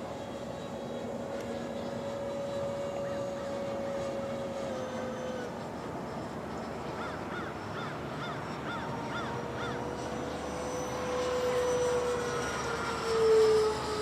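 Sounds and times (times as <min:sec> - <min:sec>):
electric ducted fan whining: 0:00.0 - 0:14.0
bird calling: 0:07.0 - 0:11.1.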